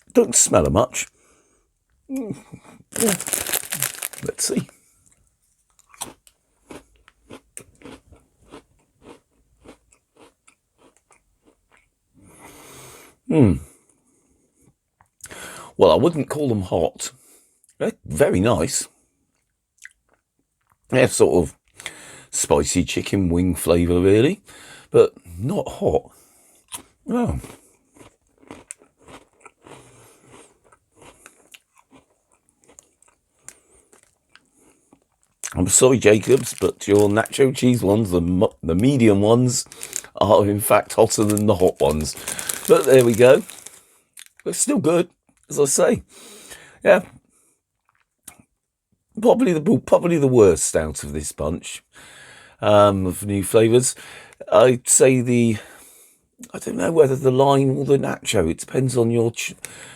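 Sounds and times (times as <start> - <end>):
crunching and chewing crackers: 2.9 - 12.0, 26.6 - 37.9, 38.8 - 44.7, 47.0 - 48.6.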